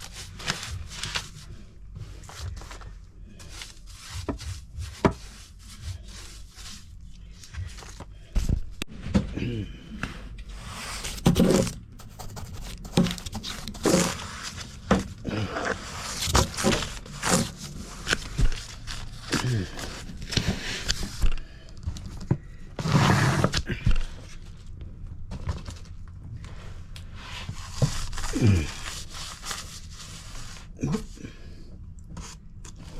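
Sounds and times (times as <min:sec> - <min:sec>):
person grunting and breathing heavily: 0:09.2 - 0:10.4, 0:19.1 - 0:21.7, 0:28.2 - 0:29.3, 0:30.6 - 0:31.7.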